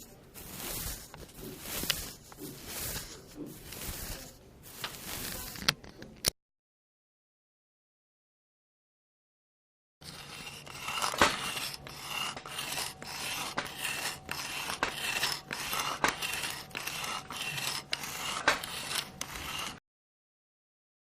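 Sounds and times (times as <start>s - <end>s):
rasping scraping strokes: 0.0s - 5.7s, 10.0s - 19.8s.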